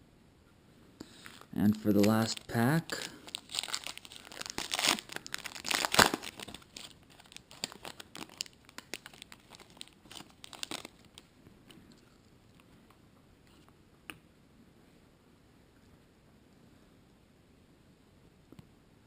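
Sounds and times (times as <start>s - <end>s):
wrapper tearing and crinkling: 1.6s - 11.3s.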